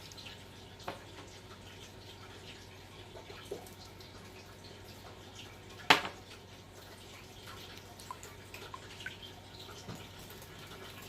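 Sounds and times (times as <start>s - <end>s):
small drip-like ticks: 0.0s - 11.0s.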